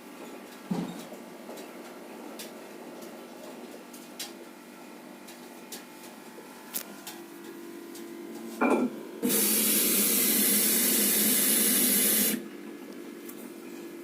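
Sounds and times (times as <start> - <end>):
washing machine humming: 0.0 - 14.0
water hissing into washing machine: 9.2 - 12.4.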